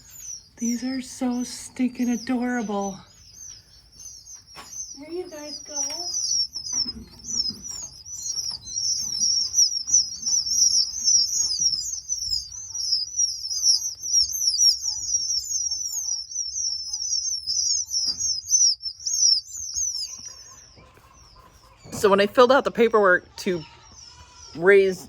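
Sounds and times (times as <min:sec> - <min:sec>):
pheasant chicks peeping: 0:00.0 - 0:25.0.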